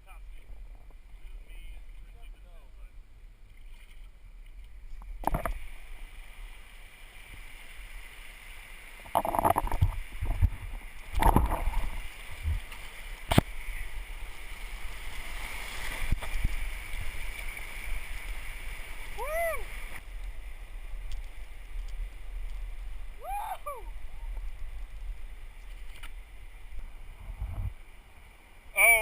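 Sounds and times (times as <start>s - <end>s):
oar splashing through water: 3.4s - 20.0s
rushing water: 3.4s - 29.0s
low wind rumble: 4.1s - 28.8s.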